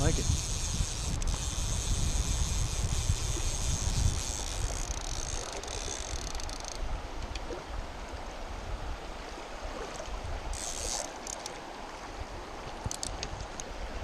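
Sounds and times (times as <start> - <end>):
wind on microphone: 0.0 - 11.0
water lapping and splashing: 1.0 - 14.0.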